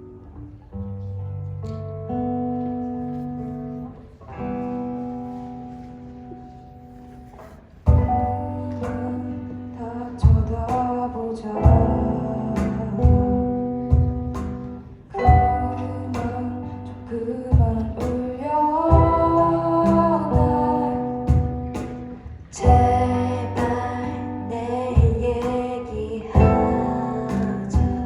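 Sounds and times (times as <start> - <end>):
steady drum beats: 7.8 - 9.2, 10.2 - 16.5, 17.5 - 24.2, 24.9 - 28.0
person singing: 7.9 - 28.0
sustained bass: 7.9 - 28.0.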